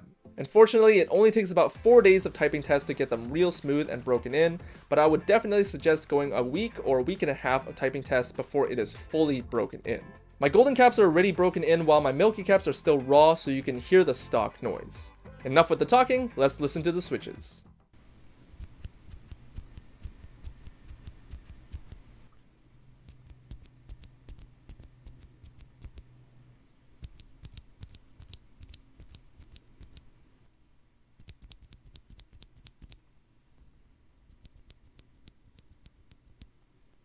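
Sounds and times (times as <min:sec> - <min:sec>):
mechanical keyboard typing: 0:23.1 - 0:26.1, 0:27.0 - 0:30.1, 0:31.2 - 0:33.0.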